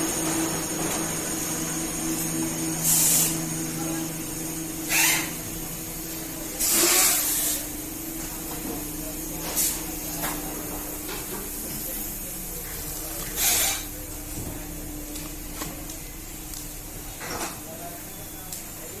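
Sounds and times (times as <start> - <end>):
factory machine hum: 0.0 - 19.0
loud hissing bursts: 2.8 - 5.5.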